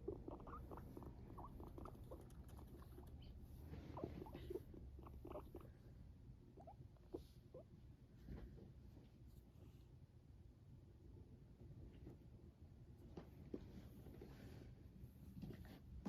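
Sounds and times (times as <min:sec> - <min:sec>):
guinea pig squeaking: 0:00.0 - 0:05.8, 0:06.5 - 0:07.7.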